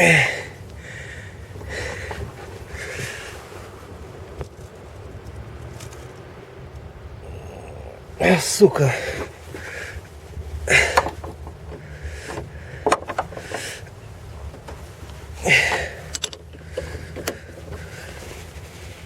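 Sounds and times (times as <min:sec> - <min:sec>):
steady low hum: 0:00.0 - 0:05.6, 0:06.4 - 0:19.0
rustling scrapes: 0:16.7 - 0:19.0.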